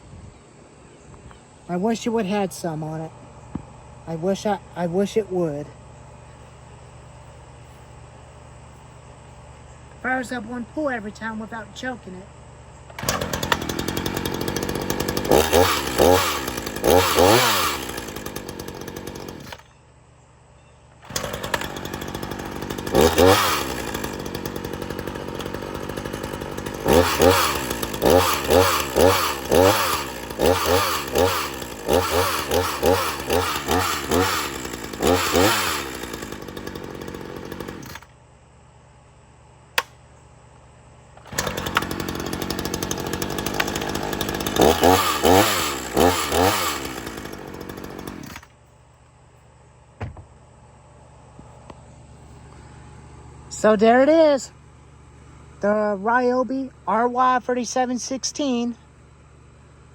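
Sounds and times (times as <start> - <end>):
chainsaw revving: 12.9 - 19.6, 21.0 - 38.1, 41.2 - 48.5.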